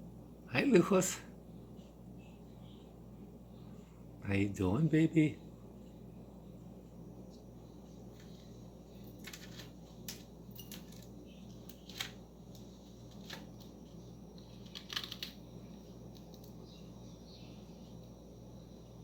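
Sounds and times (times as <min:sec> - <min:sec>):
steady low hum: 0:00.0 - 0:19.0
beak cracking seeds: 0:09.2 - 0:16.6.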